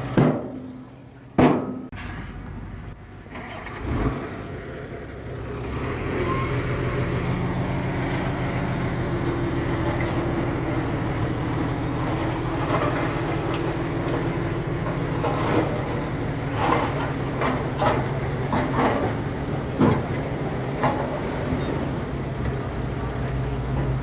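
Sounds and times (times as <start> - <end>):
diesel engine running: 2.0 - 24.0.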